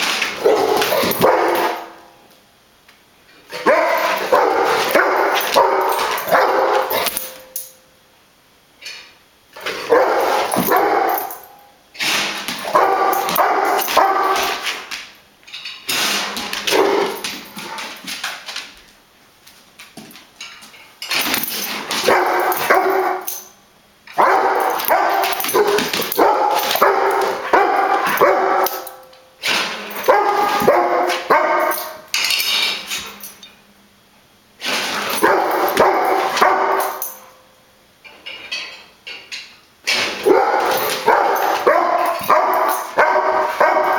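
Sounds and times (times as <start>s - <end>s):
dog barking and whining: 0.3s - 2.1s, 3.5s - 7.6s, 9.6s - 11.7s, 12.5s - 14.8s, 21.3s - 23.5s, 24.1s - 32.1s, 34.7s - 37.2s, 40.0s - 43.9s.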